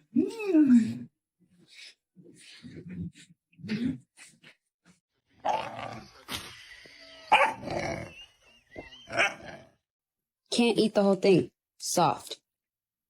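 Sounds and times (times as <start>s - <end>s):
dog barking and growling: 5.2s - 9.8s.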